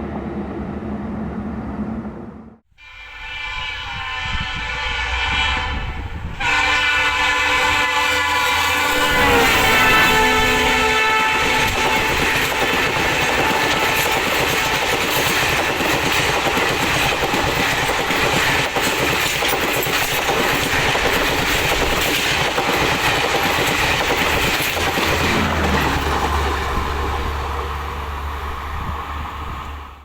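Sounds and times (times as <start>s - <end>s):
train wheels clattering over rail joints: 11.4s - 27.3s.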